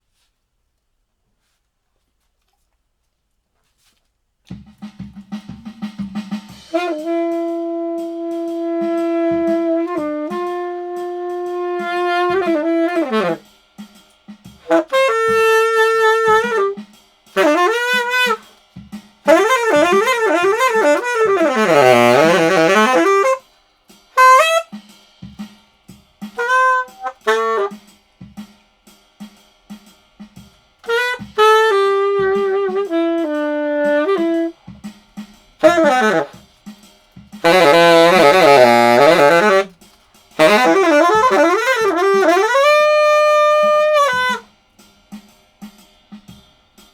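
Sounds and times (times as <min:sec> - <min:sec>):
saxophone phrases: 0:06.6 - 0:13.5, 0:14.6 - 0:16.8, 0:17.4 - 0:18.5, 0:19.3 - 0:23.4, 0:24.2 - 0:24.8, 0:26.4 - 0:27.8, 0:30.8 - 0:34.6, 0:35.6 - 0:36.4, 0:37.4 - 0:39.8, 0:40.4 - 0:44.5.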